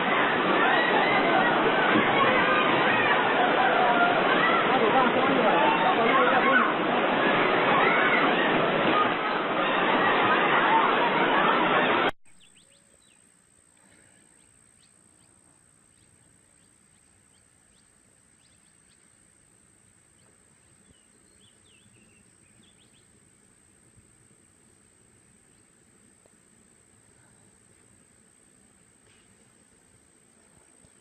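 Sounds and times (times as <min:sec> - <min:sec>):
loud rushing noise: 0:00.0 - 0:12.2
small bird chirps: 0:12.3 - 0:13.2.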